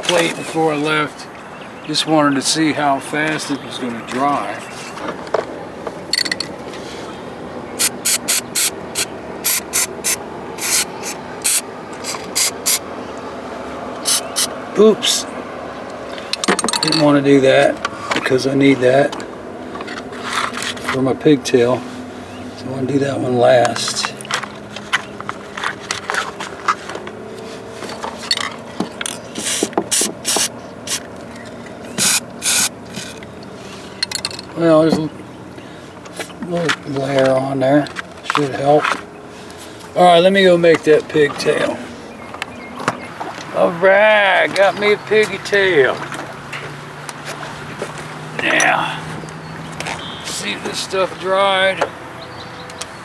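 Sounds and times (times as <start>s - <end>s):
handling clicks and rattles: 4.9s - 6.8s, 16.0s - 18.4s, 23.6s - 34.6s
aerosol can spraying: 7.8s - 12.8s, 14.0s - 14.5s, 29.4s - 31.0s, 32.0s - 32.7s.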